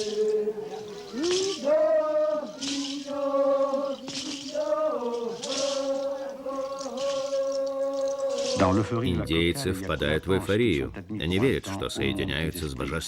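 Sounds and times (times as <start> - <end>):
men chanting in long held notes: 0.0 - 10.2.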